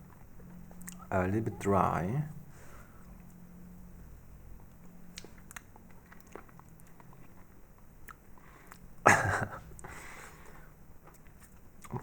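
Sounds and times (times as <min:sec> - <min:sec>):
chewing marshmallow: 0:04.6 - 0:08.9, 0:10.4 - 0:12.0.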